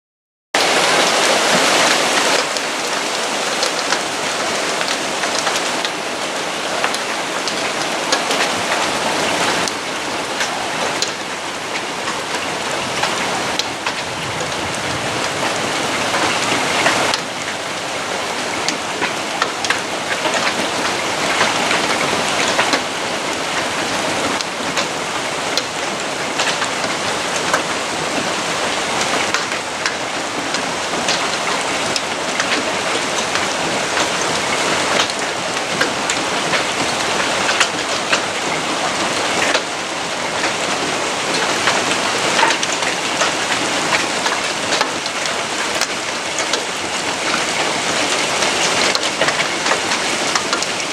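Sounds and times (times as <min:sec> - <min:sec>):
hail falling: 0:00.6 - 0:50.9
hailstones striking: 0:24.3 - 0:50.9.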